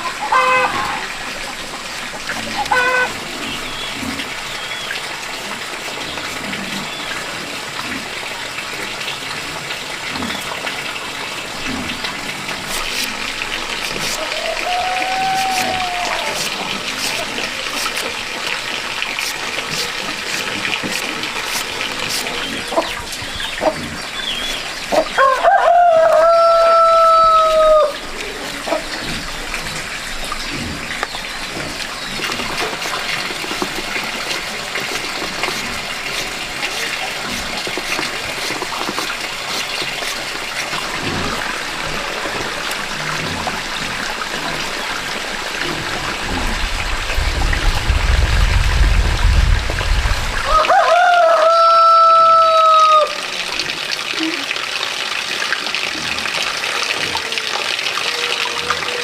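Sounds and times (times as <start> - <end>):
running water: 0.0 - 59.0
rooster crowing: 14.2 - 16.4, 25.2 - 28.0, 50.4 - 53.2.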